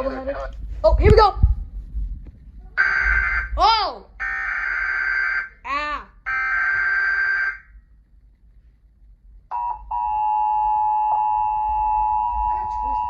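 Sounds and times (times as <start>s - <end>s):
harsh digital data buzz: 2.8s - 3.6s
two-tone attention signal: 9.5s - 13.0s.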